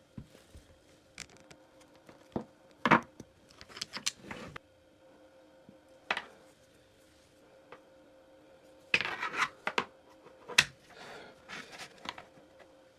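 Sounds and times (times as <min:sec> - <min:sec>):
hard items clattering: 0:01.2 - 0:04.6
hard objects clicking: 0:03.5 - 0:04.3.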